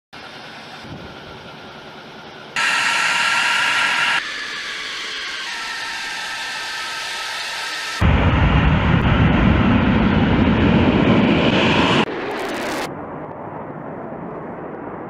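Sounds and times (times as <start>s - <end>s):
jet engine whine: 0.2s - 15.0s
low jet rumble: 8.0s - 15.0s.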